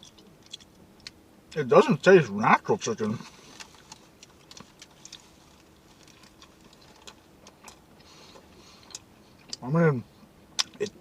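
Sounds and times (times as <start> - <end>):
person chewing food: 0.0 - 1.2, 3.2 - 9.6.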